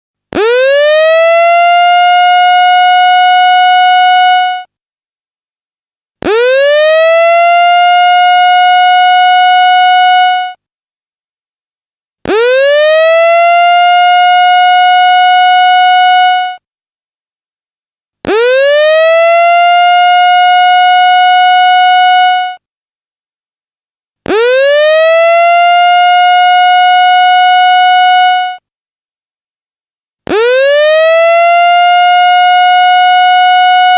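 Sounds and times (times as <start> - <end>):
electronic alarm siren wailing: 0.3 - 4.7, 6.2 - 10.6, 12.2 - 16.6, 18.2 - 22.6, 24.3 - 28.6, 30.3 - 33.9.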